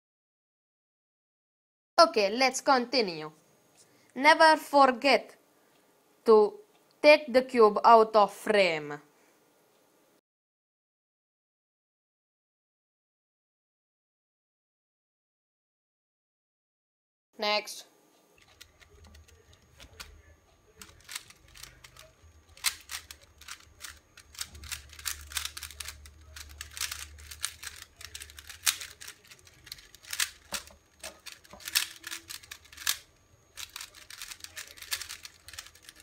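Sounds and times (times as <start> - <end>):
puzzle cube plastic layers clicking: 18.4 - 36.0.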